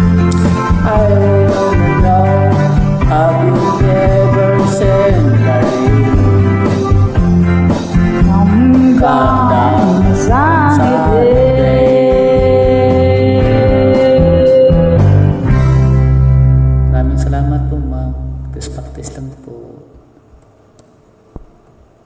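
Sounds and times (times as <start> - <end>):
instrumental accompaniment: 0.0 - 19.5
person singing: 0.3 - 6.7, 8.2 - 15.5.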